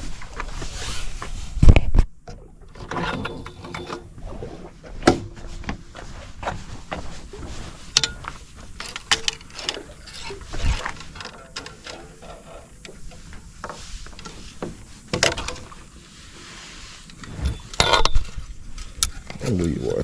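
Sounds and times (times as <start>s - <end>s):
reel and rod clicking and knocking: 0.0s - 15.9s.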